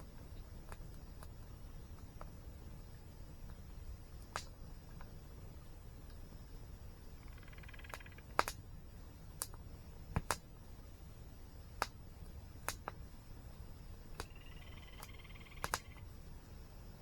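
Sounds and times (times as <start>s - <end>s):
campfire crackling and popping: 0.0s - 17.0s
bird calling: 7.2s - 8.4s, 14.1s - 16.1s.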